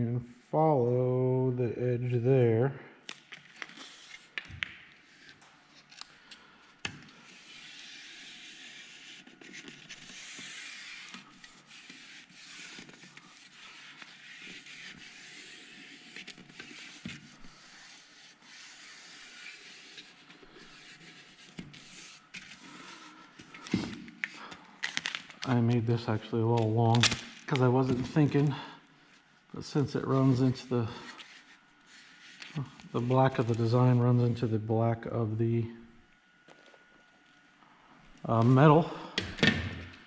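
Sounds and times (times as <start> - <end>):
rubbing and scraping on panel: 7.2 - 23.8.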